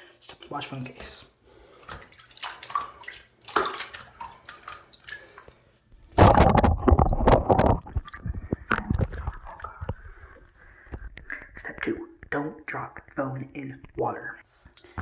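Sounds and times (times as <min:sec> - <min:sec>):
running water splashing: 0:00.4 - 0:05.5.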